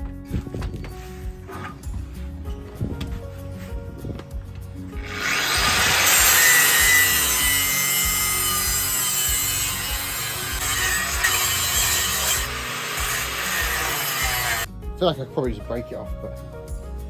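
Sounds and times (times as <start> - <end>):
angle grinder cutting metal: 5.0 - 14.7.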